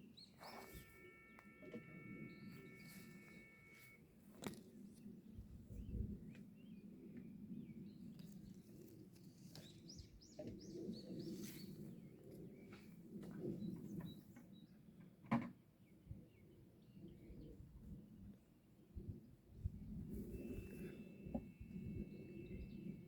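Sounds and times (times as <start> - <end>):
faint birdsong chirps: 0.0 - 14.9, 20.2 - 23.0.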